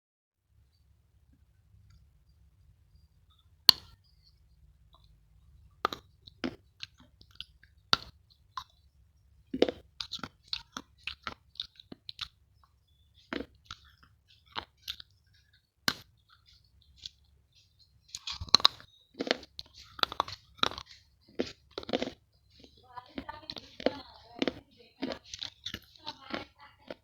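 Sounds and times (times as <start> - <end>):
person chewing crunchy chocolate: 5.0 - 27.0.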